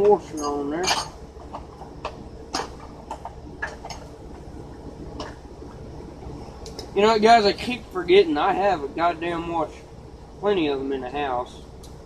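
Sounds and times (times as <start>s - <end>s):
small metal hardware clinking: 0.0s - 1.2s
faint steady hum: 0.0s - 12.0s.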